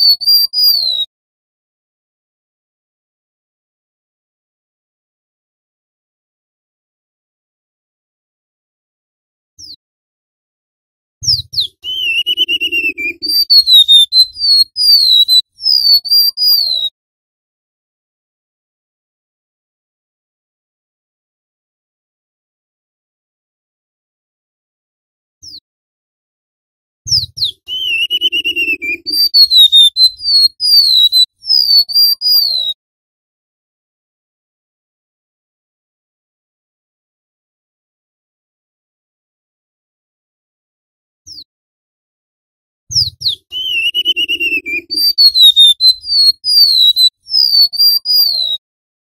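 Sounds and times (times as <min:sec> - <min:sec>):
bird singing thin whistles: 0:00.0 - 0:01.1, 0:11.2 - 0:16.9, 0:27.1 - 0:32.8, 0:42.9 - 0:48.6.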